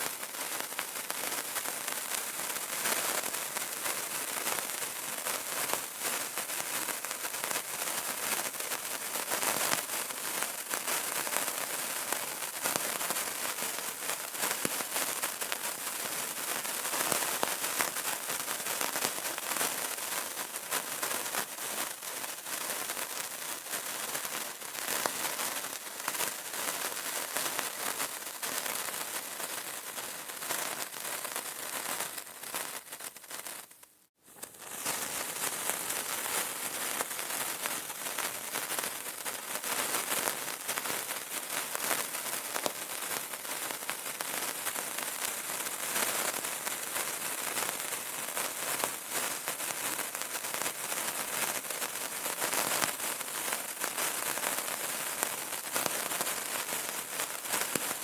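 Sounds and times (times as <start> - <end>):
candle crackling: 8.4 - 45.8.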